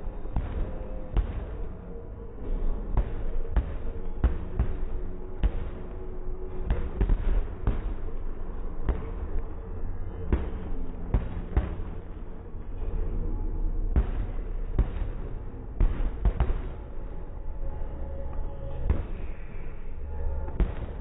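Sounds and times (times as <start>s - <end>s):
steady rumble: 0.0s - 21.0s.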